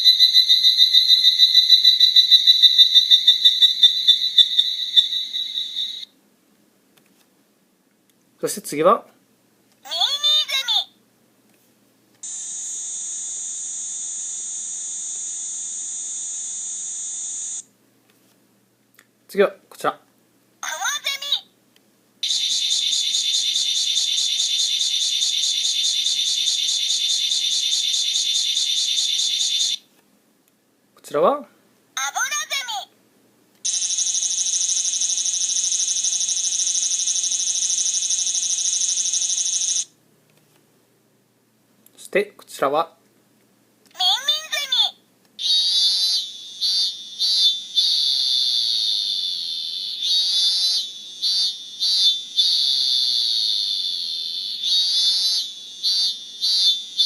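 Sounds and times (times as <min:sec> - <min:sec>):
cicada buzz from toy speaker: 0:00.0 - 0:06.0, 0:12.2 - 0:17.6
cicada buzzing: 0:12.3 - 0:17.6.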